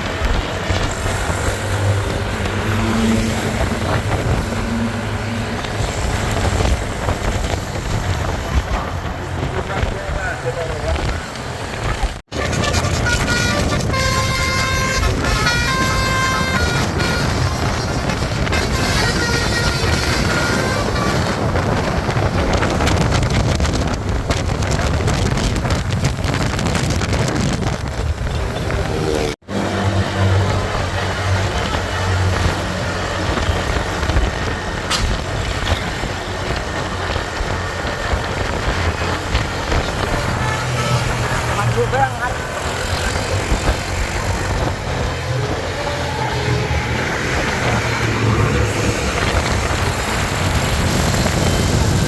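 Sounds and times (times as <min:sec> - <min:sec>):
large engine hum: 0:00.0 - 0:52.0
road traffic rumble: 0:00.0 - 0:52.0
wind buffeting microphone: 0:00.0 - 0:52.0
high melodic horn notes: 0:12.3 - 0:21.6, 0:39.9 - 0:49.1.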